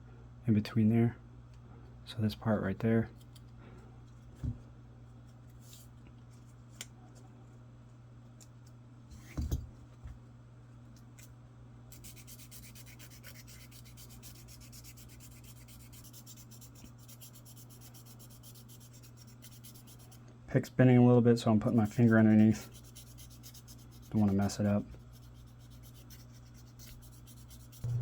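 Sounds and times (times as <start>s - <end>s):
sandpaper rasping on metal: 12.0s - 20.2s, 21.9s - 27.9s.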